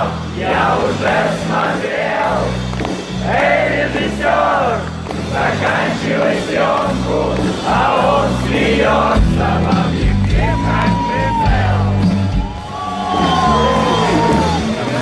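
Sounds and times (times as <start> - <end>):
live rock band playing: 4.0 - 15.0
heavy bass line: 6.9 - 12.6.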